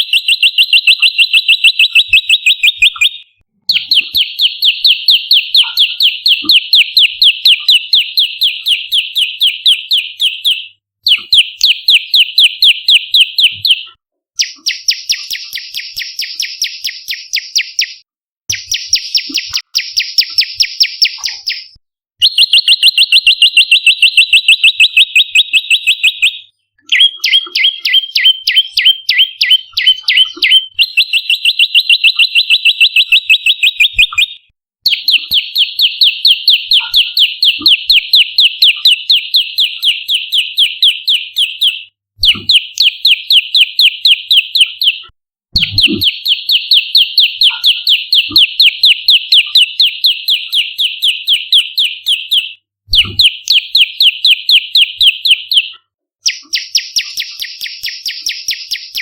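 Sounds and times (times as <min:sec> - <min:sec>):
bird chattering trills: 0:22.3 - 0:31.4.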